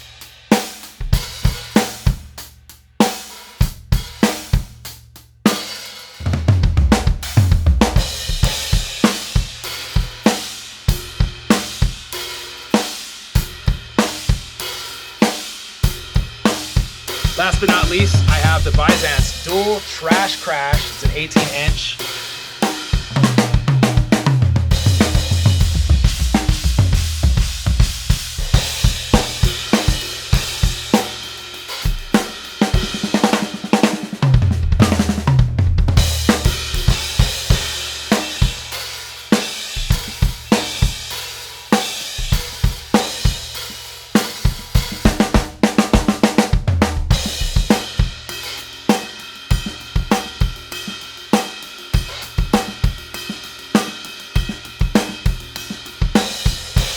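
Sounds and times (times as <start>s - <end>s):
crash cymbals and hi-hat: 0.0s - 6.2s, 7.0s - 34.1s, 36.0s - 56.9s
drum kit groove: 0.0s - 56.9s
tom fills: 17.3s - 22.1s.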